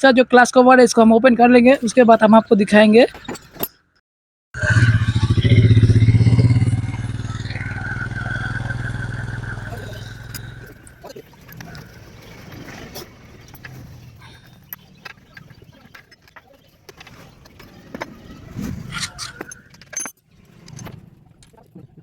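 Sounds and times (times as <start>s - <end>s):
motorcycle engine running: 4.6s - 16.0s
metallic clicks and clatter: 19.0s - 21.8s.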